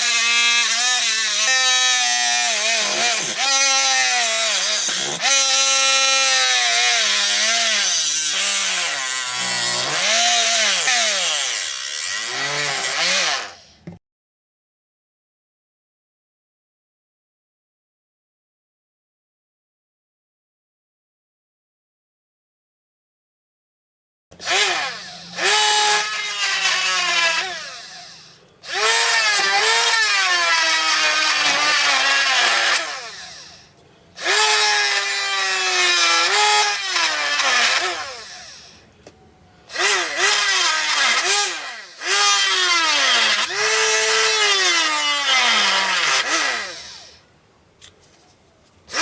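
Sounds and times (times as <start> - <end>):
electric drill whining: 0.0 - 13.8, 24.4 - 38.8, 39.7 - 47.2.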